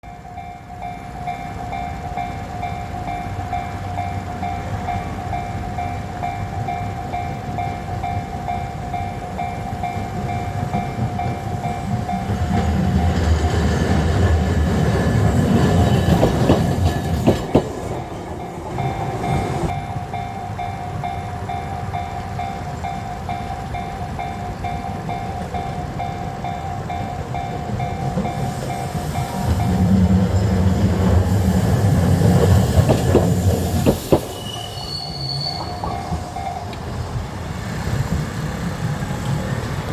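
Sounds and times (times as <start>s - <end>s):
level crossing alarm bell: 0.0s - 14.2s, 15.2s - 30.0s
streetcar rumbling past: 0.0s - 39.9s
wheels clacking on rail joints: 0.9s - 39.9s.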